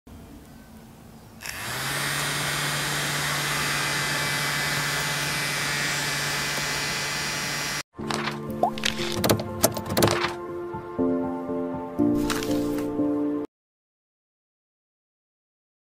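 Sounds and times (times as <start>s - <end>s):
electric fan running: 1.4s - 7.8s.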